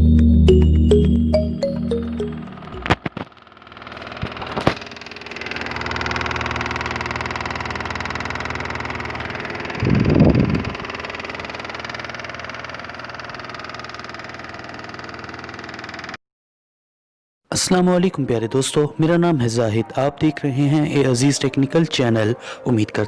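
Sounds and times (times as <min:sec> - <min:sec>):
air conditioner blower rattling: 0:03.4 - 0:16.2.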